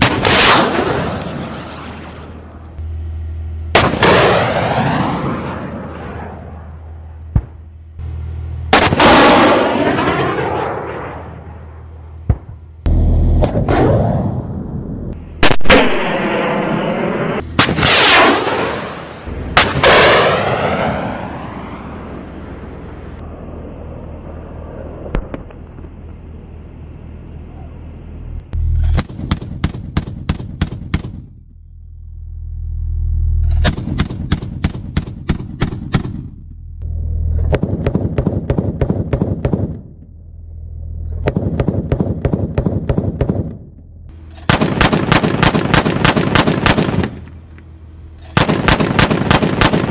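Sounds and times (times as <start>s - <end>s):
missiles whooshing past: 0.0s - 2.5s
low rumble: 0.0s - 49.9s
machine-gun fire: 33.6s - 36.3s, 37.5s - 39.9s, 41.2s - 43.6s, 44.5s - 47.2s, 48.4s - 49.9s.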